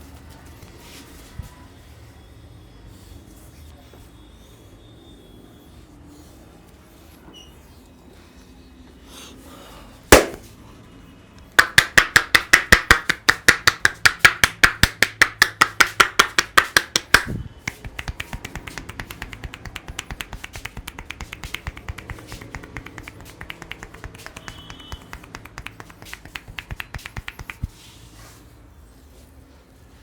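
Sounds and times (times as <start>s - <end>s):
palms slapping on skin: 10.1s - 10.4s, 11.6s - 27.8s.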